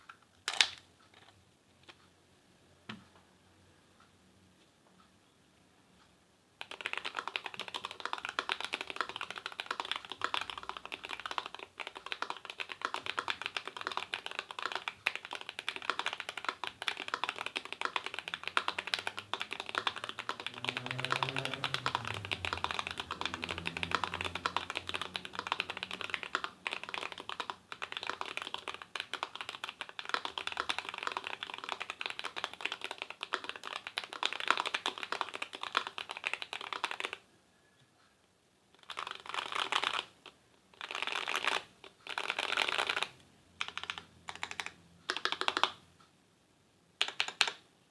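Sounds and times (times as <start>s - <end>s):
mechanical keyboard typing: 6.6s - 37.2s, 38.8s - 45.8s, 47.0s - 47.6s.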